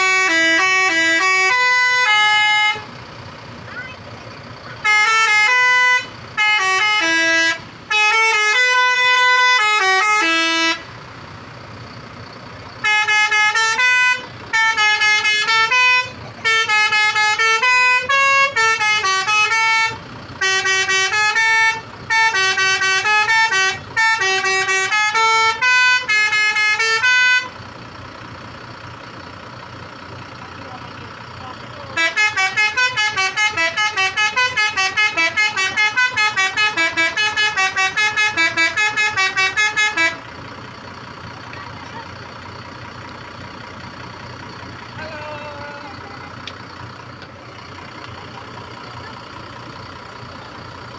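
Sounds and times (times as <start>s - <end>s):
musical air horn playing a tune: 0.0s - 2.9s, 4.8s - 10.9s, 12.8s - 27.5s, 32.0s - 40.2s.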